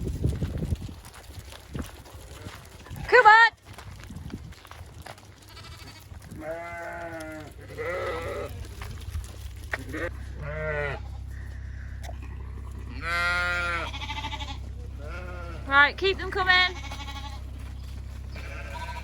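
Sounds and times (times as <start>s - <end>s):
low steady hum: 5.2s - 19.0s
sheep bleating: 5.3s - 8.9s, 9.6s - 19.0s.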